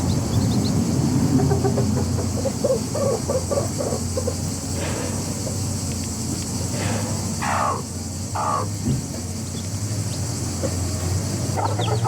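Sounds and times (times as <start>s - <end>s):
chickens squawking: 0.0s - 4.6s, 7.3s - 8.8s, 9.6s - 12.0s
steady low hum: 0.0s - 12.0s.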